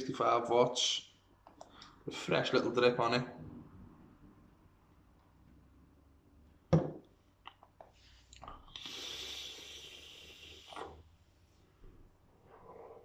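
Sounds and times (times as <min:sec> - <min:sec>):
vape hissing: 0:08.8 - 0:10.9.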